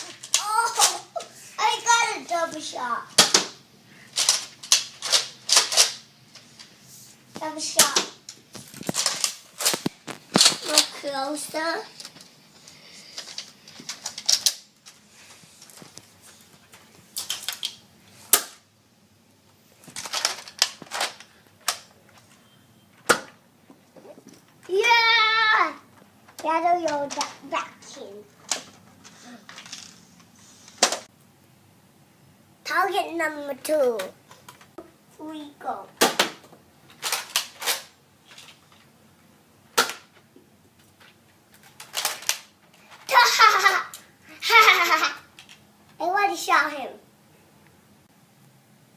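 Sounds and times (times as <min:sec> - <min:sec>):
toy blaster plastic clacks: 0:04.2 - 0:06.0.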